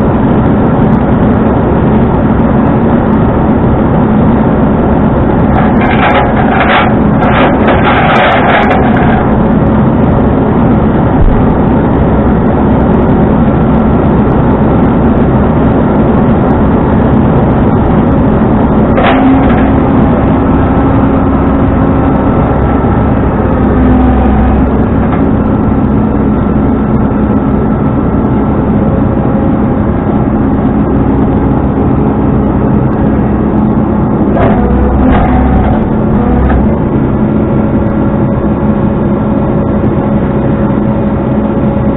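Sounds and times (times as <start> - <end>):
tow truck engine and road noise: 0.0 - 41.9
rattles: 5.4 - 9.5, 18.9 - 21.2, 34.3 - 36.8.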